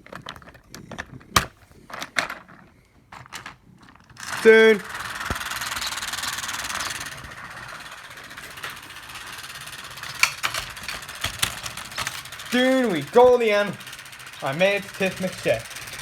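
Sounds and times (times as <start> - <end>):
sharp clicks and rattles: 0.0 - 16.0
small electric motor whirring: 4.2 - 16.0.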